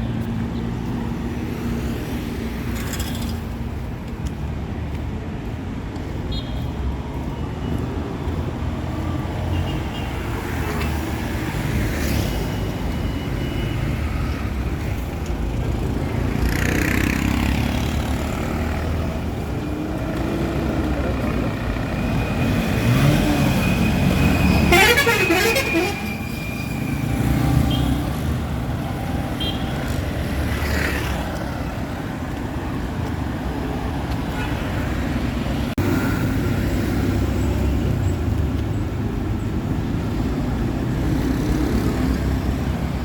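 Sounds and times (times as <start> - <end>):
vehicle engines passing: 0.0 - 43.0
vehicle horn: 24.4 - 26.3.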